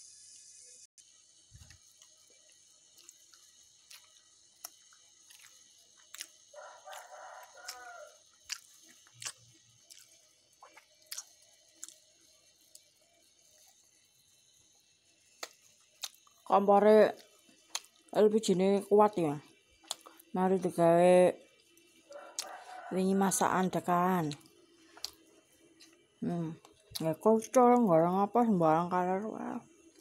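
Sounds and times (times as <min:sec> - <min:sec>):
rooster crowing: 0:06.5 - 0:08.3, 0:22.0 - 0:23.7.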